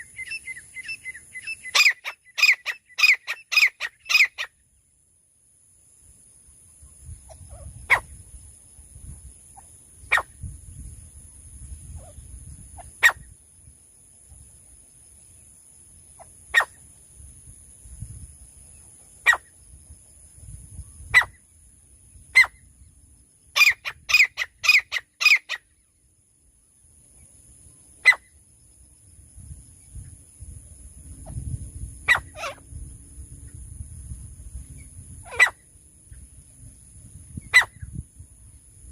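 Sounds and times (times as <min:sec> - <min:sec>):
francolin calling harshly: 0:00.0 - 0:04.6, 0:06.8 - 0:08.3, 0:09.5 - 0:10.8, 0:11.8 - 0:13.4, 0:16.1 - 0:16.9, 0:18.7 - 0:19.6, 0:21.0 - 0:25.9, 0:27.9 - 0:28.4, 0:32.0 - 0:32.8, 0:34.7 - 0:35.7, 0:37.3 - 0:38.0.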